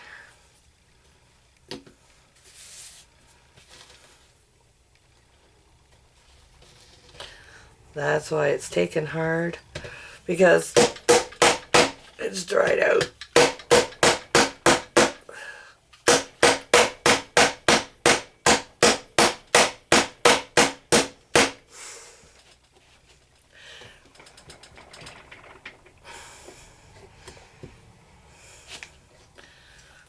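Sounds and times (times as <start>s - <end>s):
hammer striking hard block: 10.7s - 12.1s, 13.0s - 15.2s, 16.1s - 21.6s
block scraping and crumbling: 24.0s - 26.0s.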